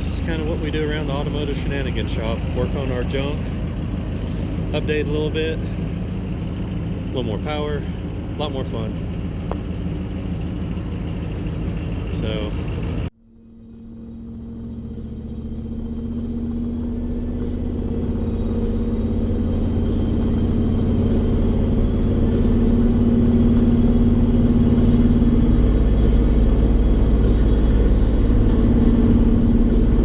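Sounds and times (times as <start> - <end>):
low engine drone: 0.0 - 30.0
background music: 14.9 - 30.0.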